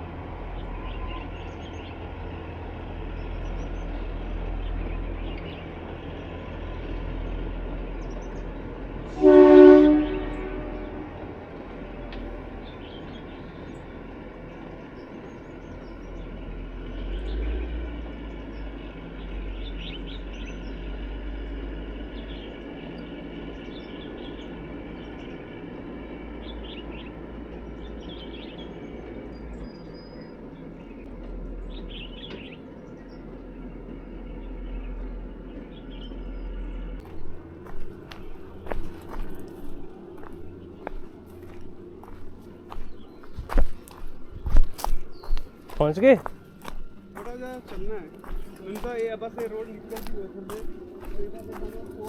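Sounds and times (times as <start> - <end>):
birds chirping: 0.0 - 52.0
train rumbling: 0.0 - 52.0
train horn blast: 9.0 - 12.2.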